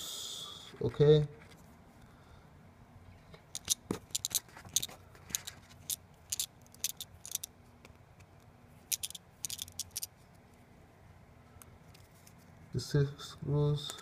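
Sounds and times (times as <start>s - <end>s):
precision screwdriver clicking: 3.6s - 4.9s.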